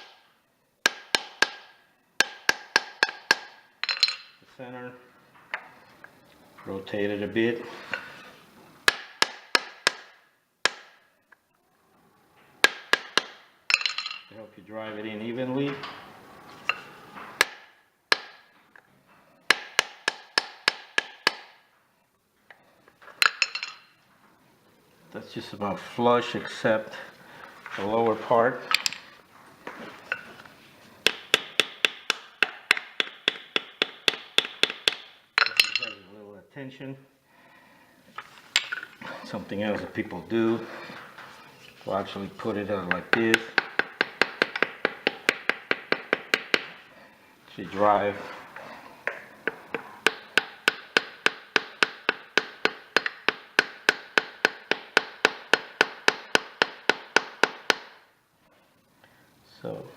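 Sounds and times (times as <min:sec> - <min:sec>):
hammer tapping a seal: 0:00.8 - 0:03.6, 0:17.4 - 0:18.4, 0:19.5 - 0:21.6, 0:31.0 - 0:35.9, 0:42.9 - 0:46.8, 0:49.1 - 0:58.0.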